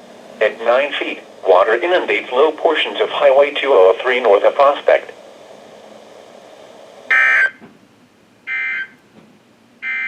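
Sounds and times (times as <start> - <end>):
faint radio hiss: 0.0 - 7.5
digital data tone bursts: 7.1 - 7.6, 8.5 - 9.0.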